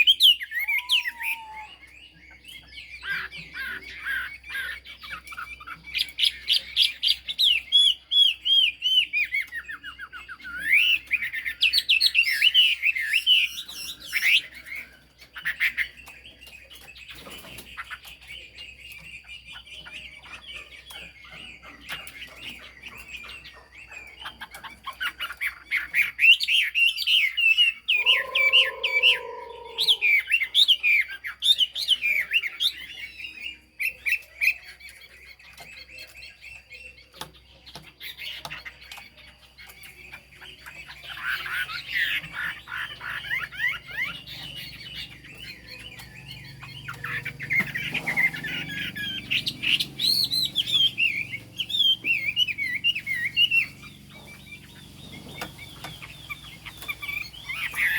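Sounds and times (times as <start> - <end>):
bird singing whistled phrases: 0.0 - 1.9, 27.9 - 30.4.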